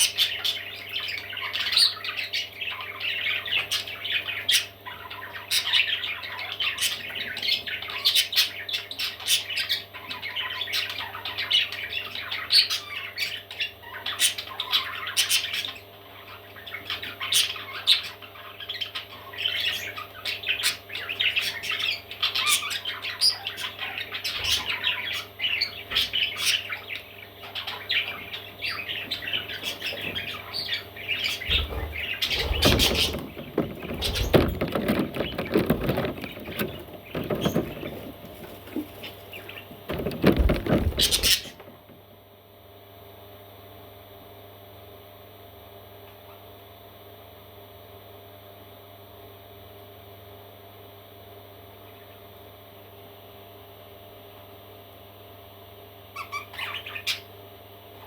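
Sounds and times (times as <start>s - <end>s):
parrot chicks squawking: 0.0s - 41.8s, 56.1s - 57.4s
low steady hum: 23.9s - 43.4s.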